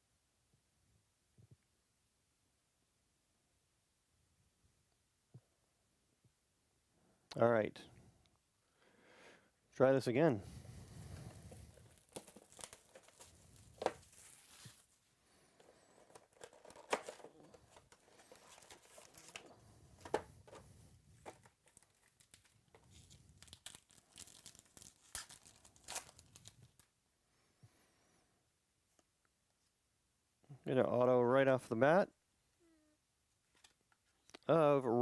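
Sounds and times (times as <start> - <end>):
cards rustling: 10.4 - 26.9
wrappers crinkling: 10.6 - 26.9
card packs being torn open: 11.0 - 14.9, 15.6 - 26.9.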